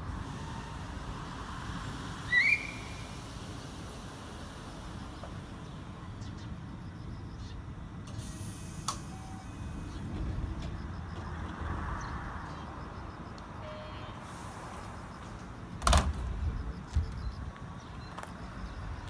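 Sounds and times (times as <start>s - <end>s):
steady low rumble: 14.5s - 19.0s.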